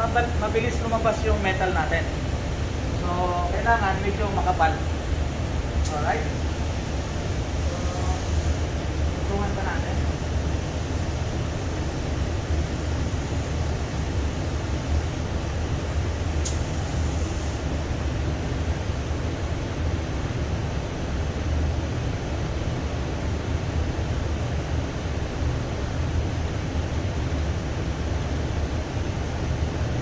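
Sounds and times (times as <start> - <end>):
spray gun air rushing: 4.8 - 15.7, 16.3 - 17.7.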